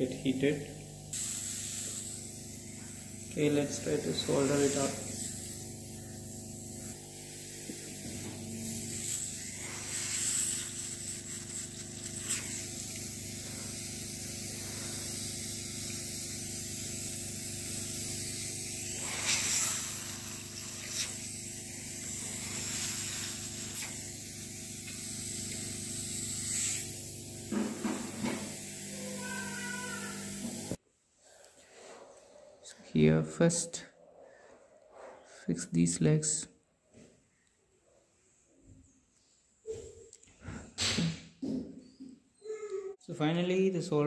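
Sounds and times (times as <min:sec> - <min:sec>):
hot-air tool hissing: 0:00.0 - 0:30.8.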